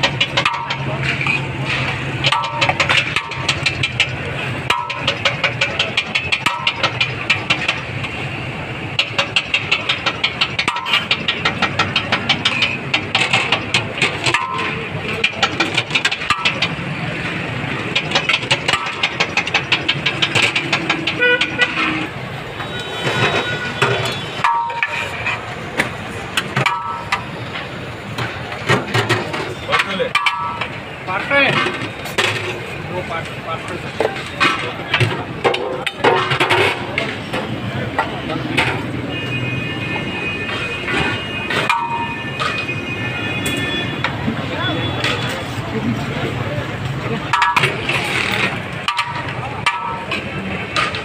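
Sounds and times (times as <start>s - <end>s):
street traffic: 0.0s - 51.0s
fast sharp clicks: 2.2s - 7.9s
vehicle horn toots: 21.2s - 25.4s, 39.1s - 45.3s.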